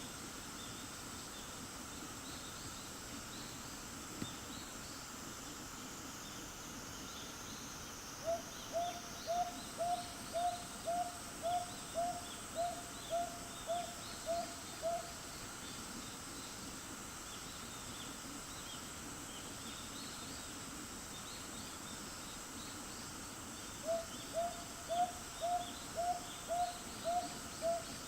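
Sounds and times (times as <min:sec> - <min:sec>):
faint insect chirping: 0:00.0 - 0:28.0
owl hooting: 0:08.2 - 0:15.2, 0:23.8 - 0:28.0.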